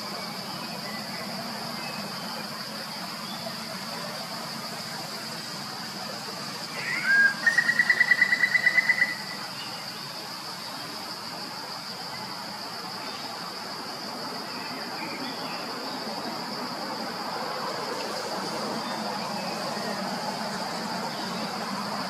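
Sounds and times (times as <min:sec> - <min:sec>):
insects droning: 0:00.0 - 0:22.0
bird trilling: 0:06.8 - 0:09.4.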